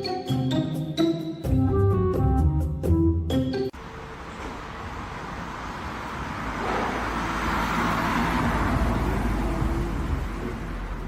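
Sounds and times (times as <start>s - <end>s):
road vehicle passing: 3.8s - 11.0s.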